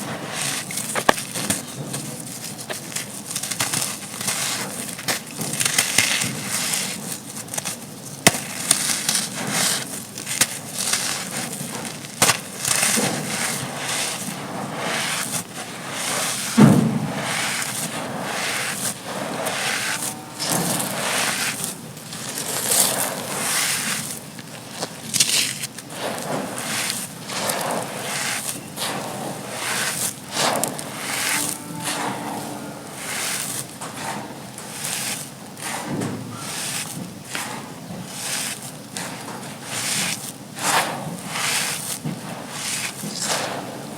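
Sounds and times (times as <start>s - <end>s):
cement chunks crumbling and crunching: 0.0s - 31.8s
heavy crunching thud: 16.4s - 24.2s.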